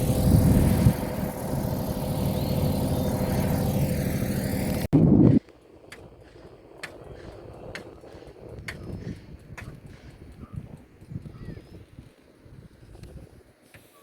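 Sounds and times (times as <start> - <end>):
motor running steadily: 0.0 - 4.9.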